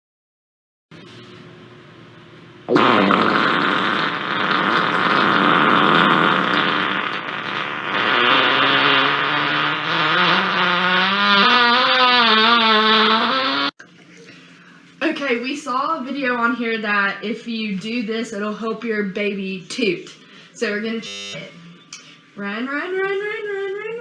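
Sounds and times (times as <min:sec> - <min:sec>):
long loud fart: 0:02.7 - 0:13.8.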